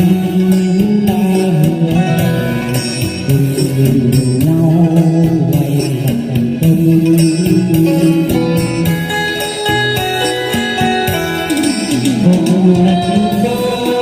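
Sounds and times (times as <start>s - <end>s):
folk song: 0.0s - 14.0s
plucked string melody: 0.0s - 14.0s.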